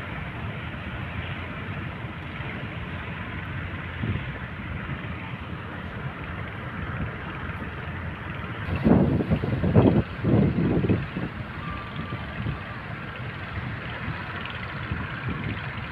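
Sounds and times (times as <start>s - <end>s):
boat engine running: 0.0s - 15.9s
noisy rush: 0.0s - 15.9s.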